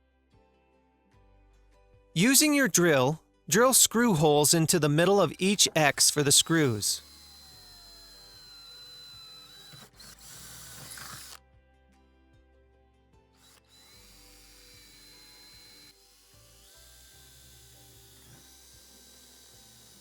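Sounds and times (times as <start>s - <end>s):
electric drill boring through metal: 5.5s - 11.4s, 13.4s - 20.0s.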